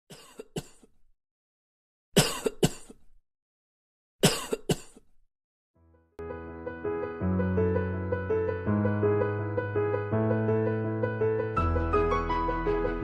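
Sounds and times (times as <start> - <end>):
person coughing: 0.1 - 1.0, 2.2 - 3.1, 4.2 - 5.2
piano music: 5.8 - 13.0.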